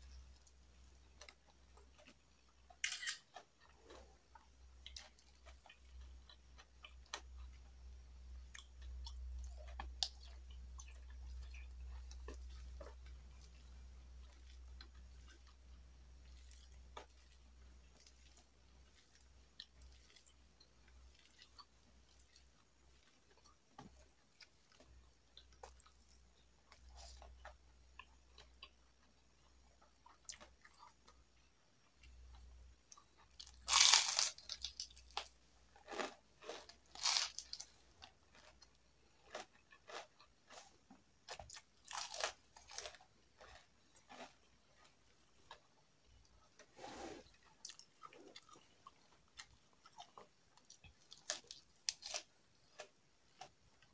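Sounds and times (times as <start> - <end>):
low steady hum: 0.0 - 35.8
chewing with crunches: 0.0 - 53.9.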